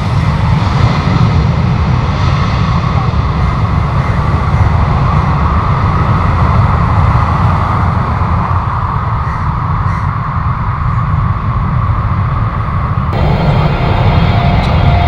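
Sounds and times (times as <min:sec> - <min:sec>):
jet engines running: 0:13.0 - 0:15.0.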